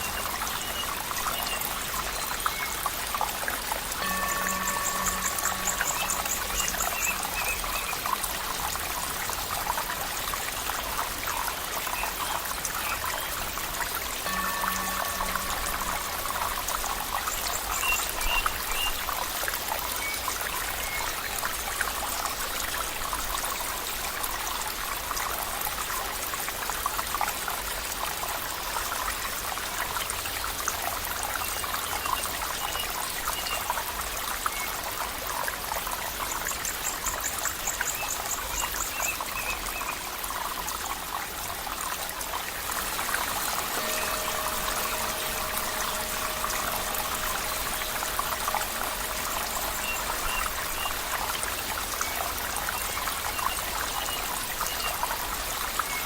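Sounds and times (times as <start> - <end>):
stream water trickling: 0.0 - 56.0
low steady tone: 3.8 - 8.6, 13.0 - 18.6, 42.6 - 55.0
faint high chirps: 4.0 - 8.0, 14.2 - 18.5, 42.7 - 55.0.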